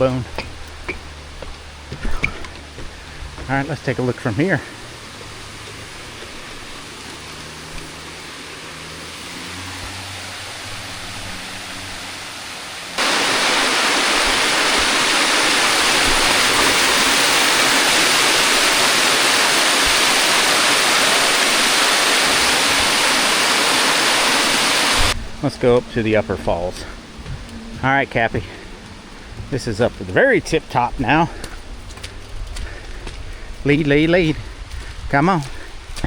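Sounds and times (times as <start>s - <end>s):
waterfall roaring: 0.0s - 26.8s.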